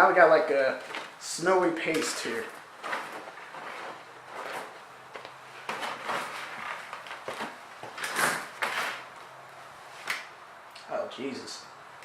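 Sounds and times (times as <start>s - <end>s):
slush stirred and scraped: 2.2s - 4.9s.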